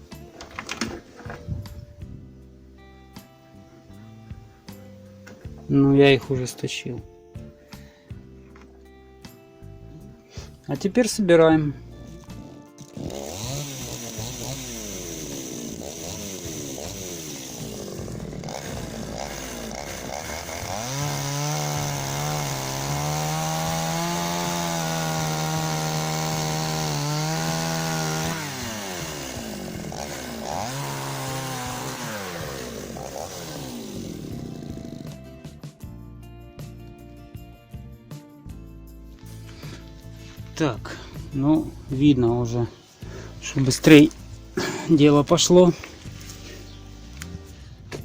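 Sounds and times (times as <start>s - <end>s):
chainsaw revving: 11.9s - 35.7s.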